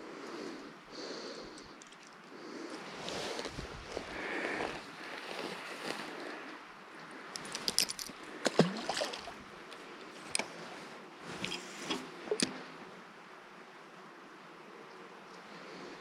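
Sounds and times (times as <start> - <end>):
water sloshing: 7.4 - 10.6.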